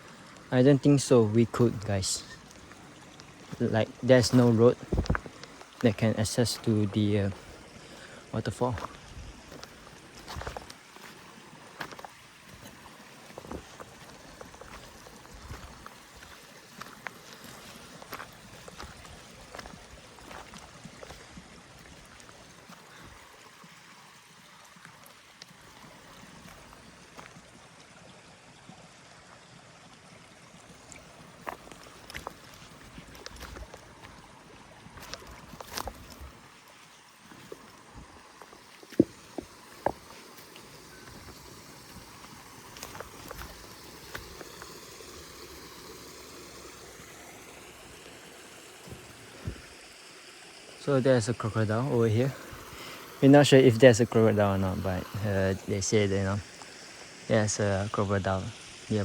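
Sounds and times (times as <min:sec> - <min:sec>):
flowing water rushing: 0:00.0 - 0:59.0
soft thumps: 0:04.9 - 0:05.3, 0:38.9 - 0:40.1.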